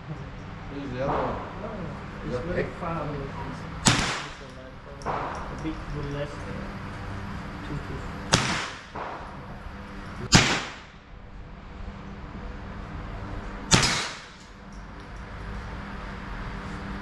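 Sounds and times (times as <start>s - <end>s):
gunshots with echo: 3.8s - 5.8s, 8.3s - 9.6s, 10.3s - 11.0s, 13.7s - 14.4s.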